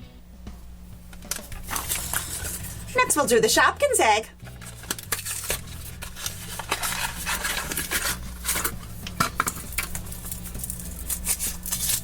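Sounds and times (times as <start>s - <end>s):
foil wrapper crinkling: 1.3s - 3.0s, 4.4s - 12.0s.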